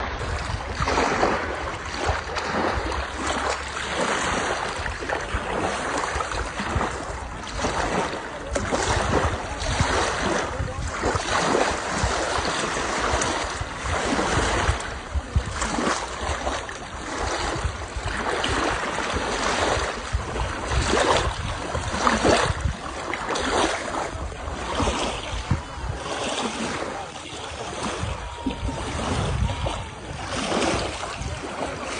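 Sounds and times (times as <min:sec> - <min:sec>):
sea waves washing onto shore: 0:00.0 - 0:31.9.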